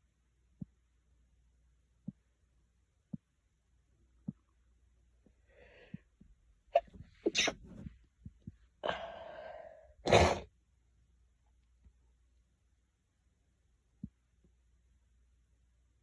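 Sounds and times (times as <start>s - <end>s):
person sneezing: 6.8s - 7.9s, 10.0s - 10.5s
drawn-out breath: 8.8s - 10.0s.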